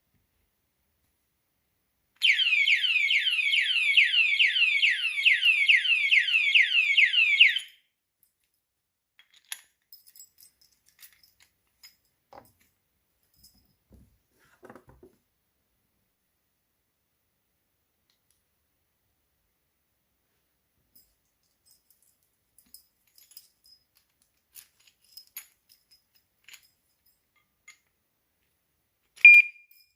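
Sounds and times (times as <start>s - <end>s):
alarm siren electronic sweeps: 2.2s - 7.7s.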